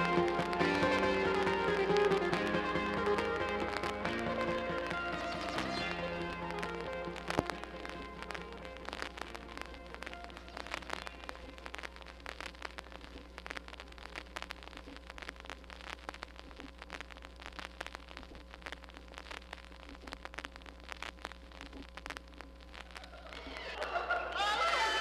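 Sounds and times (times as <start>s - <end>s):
steady low hum: 0.0s - 25.0s
vinyl record crackle: 0.0s - 25.0s.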